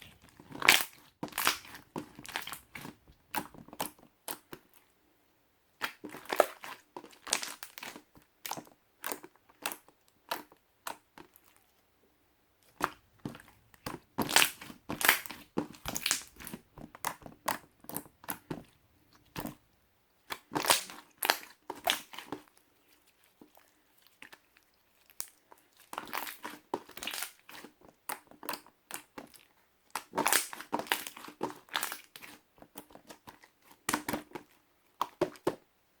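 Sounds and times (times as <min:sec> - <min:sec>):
slime squished by hand: 0:00.0 - 0:04.7, 0:12.7 - 0:19.6, 0:20.2 - 0:35.6.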